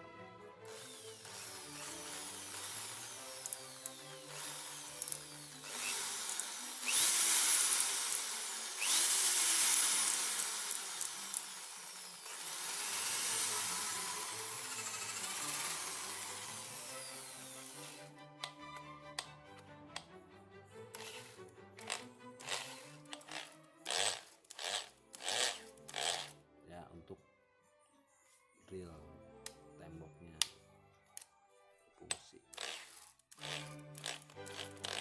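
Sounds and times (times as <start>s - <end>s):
electric drill motor whine: 0.7s - 18.6s, 20.9s - 26.3s, 32.6s - 35.0s.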